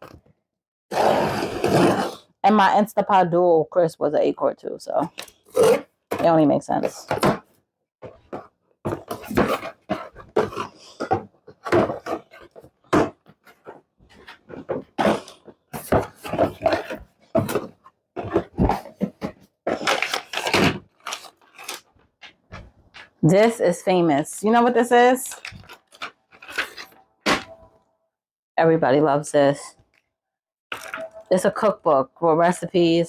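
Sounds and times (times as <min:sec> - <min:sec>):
packaging rustling and scraping: 0:05.1 - 0:23.5, 0:24.5 - 0:27.7, 0:30.7 - 0:31.3.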